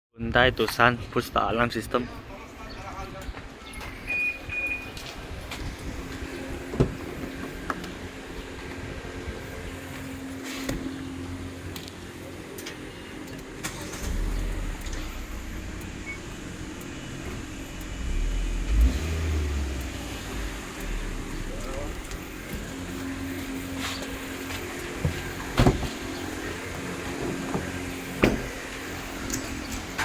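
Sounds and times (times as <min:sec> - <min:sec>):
short electronic beep: 0:04.0 - 0:05.0
low steady hum: 0:13.0 - 0:27.1
deep low rumble: 0:14.1 - 0:24.4.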